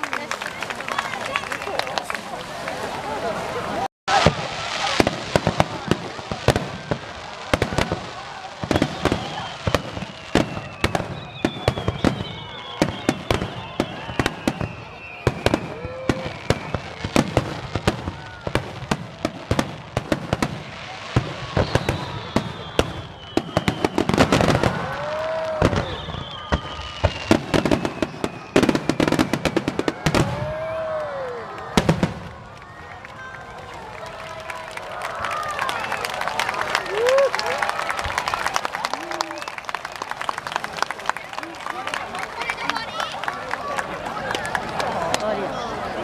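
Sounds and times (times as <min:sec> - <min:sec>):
fireworks bangs and crackles: 0:04.1 - 0:34.1
fireworks whistles sliding down: 0:08.6 - 0:18.5, 0:20.7 - 0:30.5.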